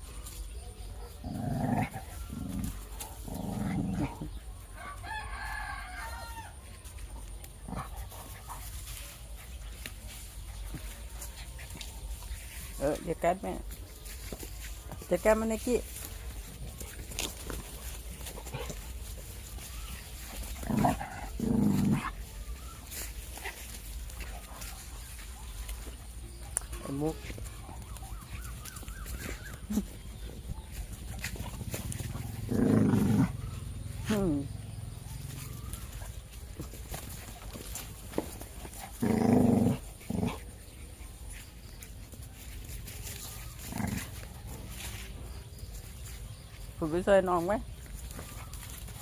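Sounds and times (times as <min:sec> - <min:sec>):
puppy growling: 0:01.1 - 0:04.5, 0:16.5 - 0:22.4, 0:27.0 - 0:35.8, 0:38.5 - 0:41.3, 0:43.5 - 0:44.8.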